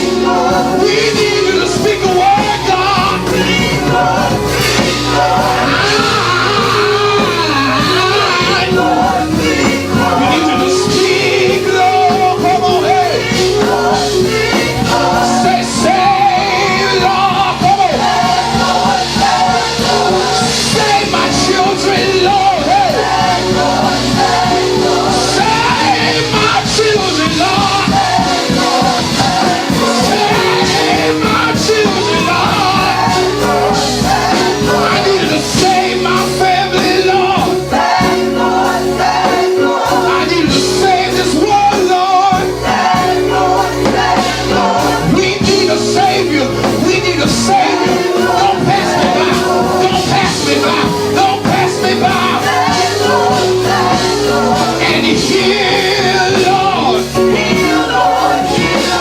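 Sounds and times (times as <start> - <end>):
band with steady bass: 0.0 - 59.0
person singing: 0.0 - 59.0.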